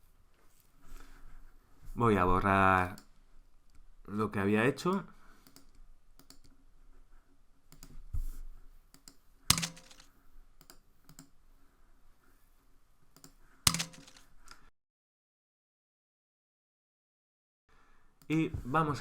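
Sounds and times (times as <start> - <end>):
mouse and keyboard clicking: 5.4 - 6.5, 8.9 - 11.3, 13.2 - 14.2.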